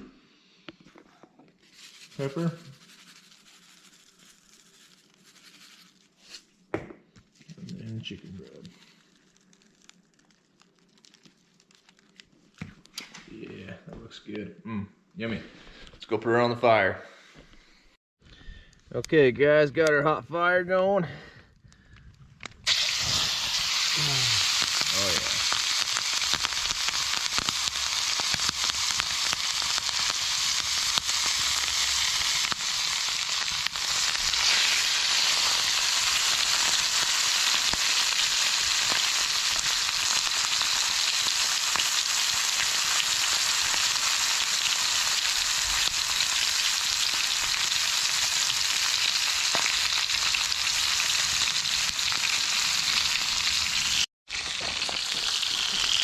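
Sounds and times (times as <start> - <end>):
meat sizzling in a pan: 22.7 - 56.0.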